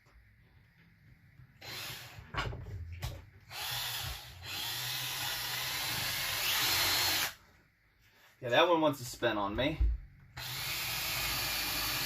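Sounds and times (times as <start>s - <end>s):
power drill drilling metal: 1.6s - 2.3s, 3.5s - 7.4s, 10.4s - 12.0s.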